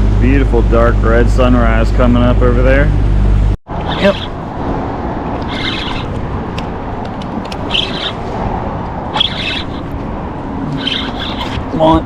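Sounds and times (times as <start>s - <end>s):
steady background rush: 3.0s - 12.0s
birds calling: 3.7s - 4.6s, 5.2s - 12.0s.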